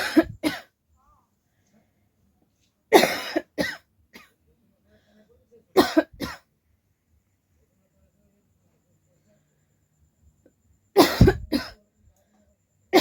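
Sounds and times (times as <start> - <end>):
person coughing: 0.0 - 0.7, 3.0 - 3.8, 5.8 - 6.4, 11.0 - 11.8.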